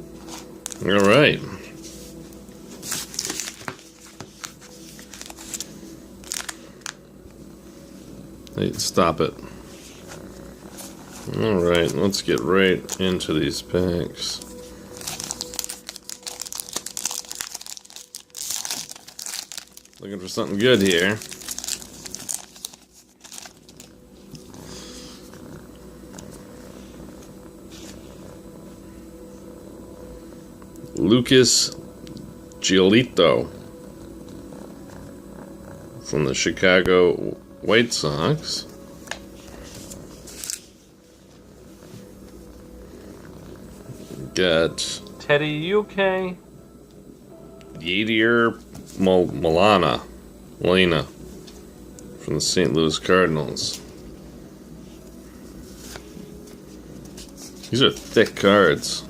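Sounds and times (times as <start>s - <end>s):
plastic wrapper crinkling: 0.6s - 1.2s, 2.8s - 7.1s, 11.2s - 13.3s, 14.4s - 24.4s, 39.8s - 40.7s
cat purring: 7.5s - 15.6s, 23.7s - 29.0s, 33.1s - 37.6s, 41.6s - 44.5s.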